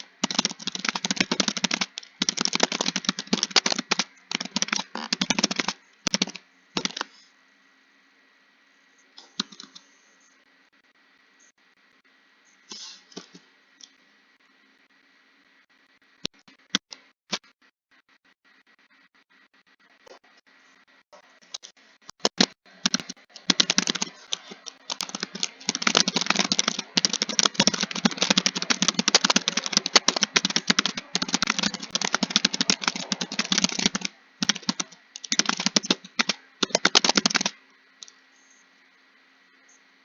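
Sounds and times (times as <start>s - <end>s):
typing on computer keyboard: 0.0s - 7.1s, 9.2s - 9.8s, 21.5s - 38.1s.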